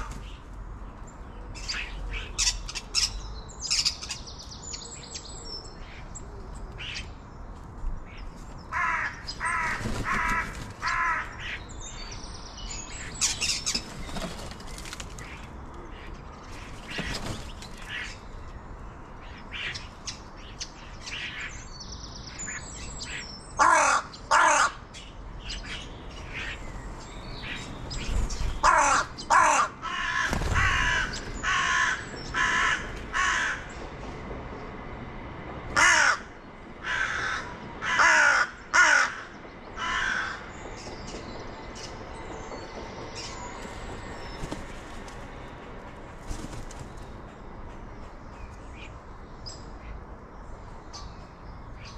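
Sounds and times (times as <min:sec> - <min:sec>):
crow cawing: 0:08.7 - 0:11.6, 0:23.6 - 0:24.8, 0:28.6 - 0:33.7, 0:35.8 - 0:40.5
small birds chirping: 0:24.9 - 0:29.3, 0:40.5 - 0:51.9.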